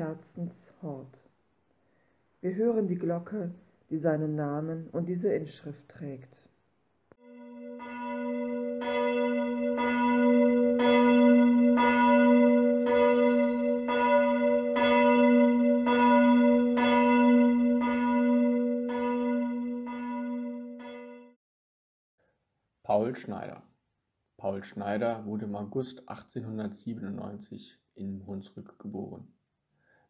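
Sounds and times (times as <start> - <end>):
church bell ringing: 7.2 - 21.4.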